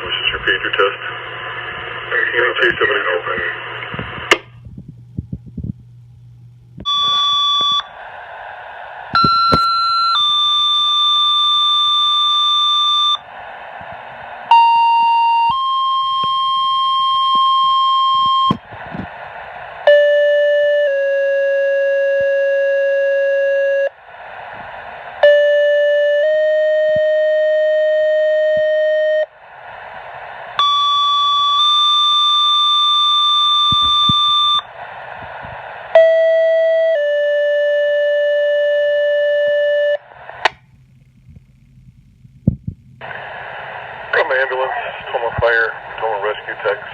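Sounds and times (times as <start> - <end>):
radio static: 0.0 - 4.4, 7.6 - 10.0, 18.3 - 19.9, 23.9 - 25.4, 29.3 - 31.5, 33.7 - 36.1, 40.0 - 41.7, 42.4 - 46.9.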